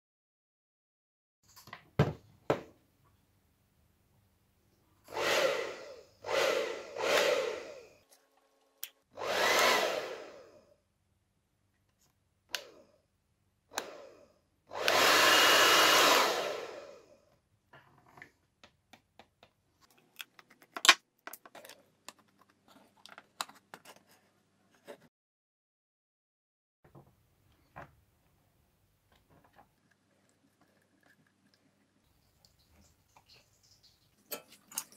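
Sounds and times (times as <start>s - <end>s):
hair dryer blowing: 5.1s - 8.0s, 9.2s - 10.6s, 12.6s - 12.8s, 13.7s - 17.2s
small clicks and taps: 17.7s - 24.0s.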